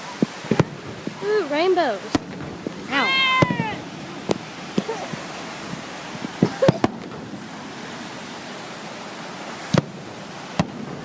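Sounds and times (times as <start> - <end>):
surf and wind hiss: 0.0 - 11.0
fireworks shell bursts: 0.4 - 8.2.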